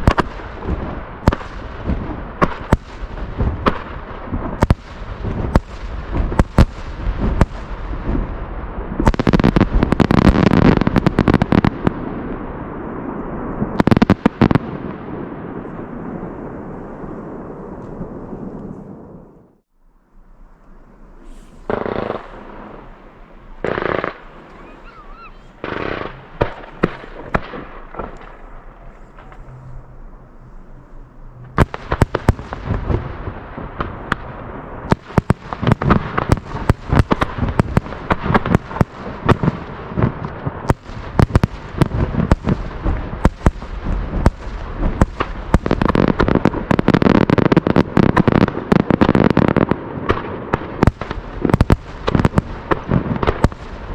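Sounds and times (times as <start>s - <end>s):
fireworks barrage bangs and crackling: 0.0s - 19.7s, 20.4s - 53.9s
fireworks shell bursts booming: 21.2s - 53.9s.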